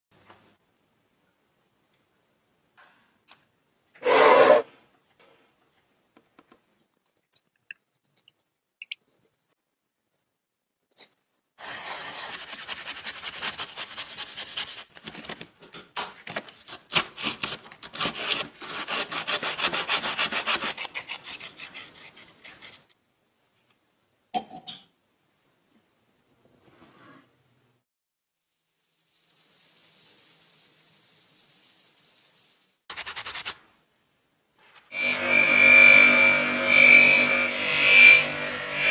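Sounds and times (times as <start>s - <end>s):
abrasive rubbing strokes: 4.0s - 4.7s
loud scrape: 4.0s - 4.7s, 34.7s - 38.9s.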